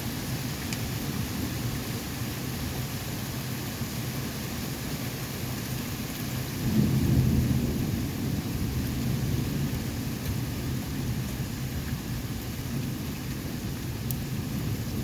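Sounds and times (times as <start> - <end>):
steady rain falling: 0.0 - 15.0
thunder rumbling: 6.6 - 11.2.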